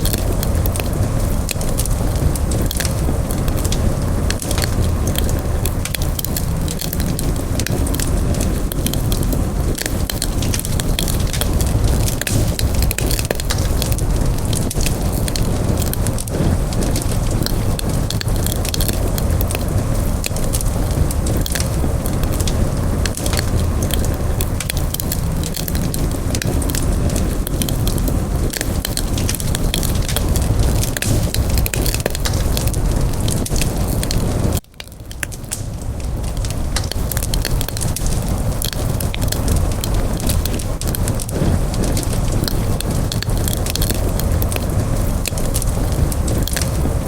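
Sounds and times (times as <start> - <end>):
low rumble of flame: 0.0 - 47.0
wood crackling and popping: 0.0 - 47.0.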